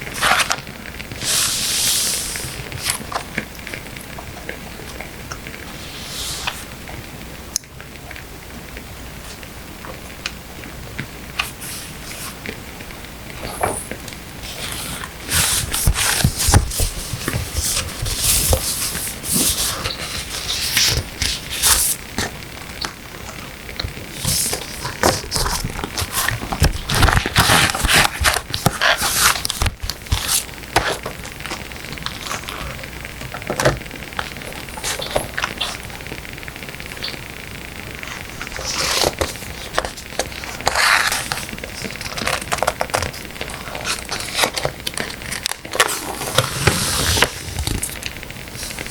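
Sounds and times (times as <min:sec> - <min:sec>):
paper rustling and crinkling: 0:00.0 - 0:03.8, 0:13.3 - 0:36.0, 0:38.0 - 0:48.9
wood fire crackling: 0:00.0 - 0:48.9.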